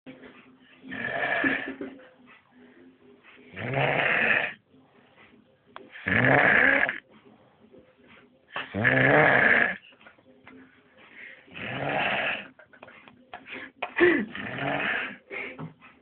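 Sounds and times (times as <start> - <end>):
loud snoring: 0.9 - 1.8, 3.5 - 4.6, 6.0 - 7.0, 8.6 - 9.8, 11.5 - 12.5, 14.3 - 15.2.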